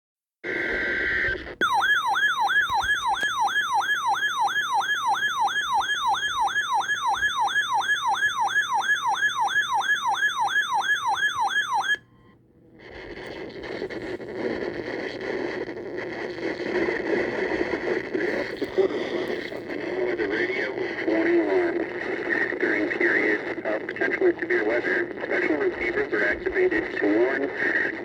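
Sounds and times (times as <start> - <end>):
electronic siren sweeping: 1.6 - 12.0.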